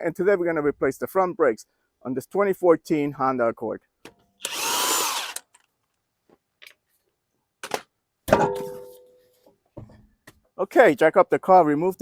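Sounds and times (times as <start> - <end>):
power tool whirring: 4.4 - 5.6.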